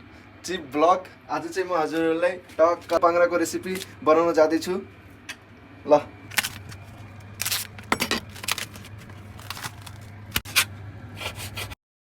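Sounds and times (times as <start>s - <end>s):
steady low hum: 0.0s - 11.8s
utensils scraping and knocking: 6.5s - 11.8s.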